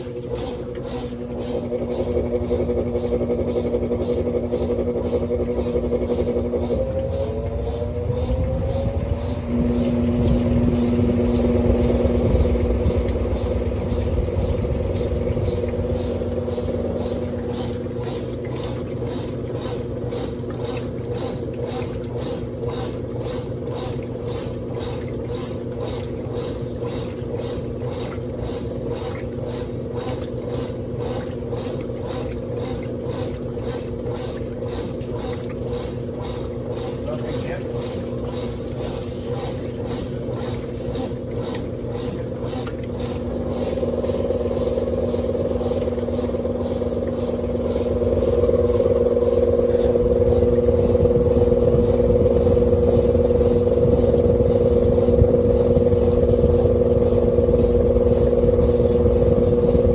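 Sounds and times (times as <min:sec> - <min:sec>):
washing machine churning: 0:00.0 - 0:59.9
washing machine motor hum: 0:00.0 - 0:59.9
rhythmic swish: 0:30.5 - 0:59.9.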